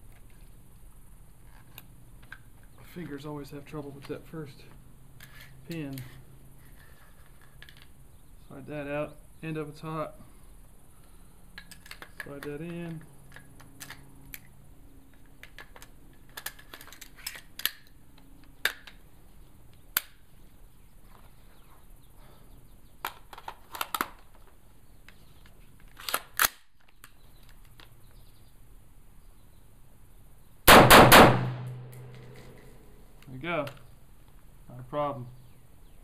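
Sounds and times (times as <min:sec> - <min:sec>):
metallic clicks of rifle assembly: 0:11.6 - 0:14.5, 0:15.2 - 0:19.0, 0:23.0 - 0:24.3, 0:25.8 - 0:27.9
loud rifle shots: 0:30.7 - 0:32.5.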